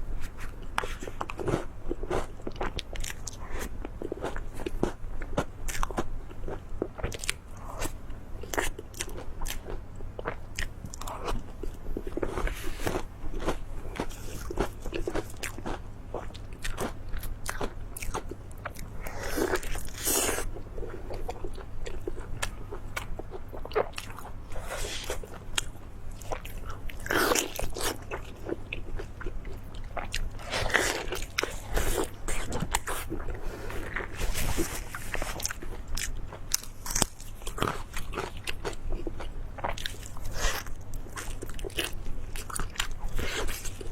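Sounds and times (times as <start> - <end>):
person chewing crunchy food: 0.2 - 43.9.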